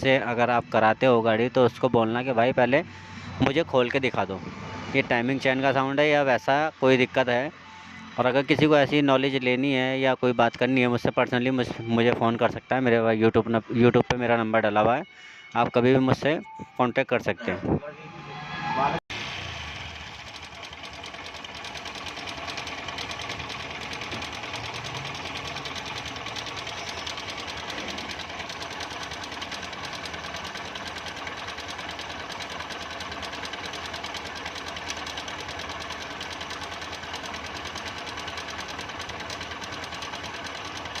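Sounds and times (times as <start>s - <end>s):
motorcycle engine clattering: 19.4s - 41.0s.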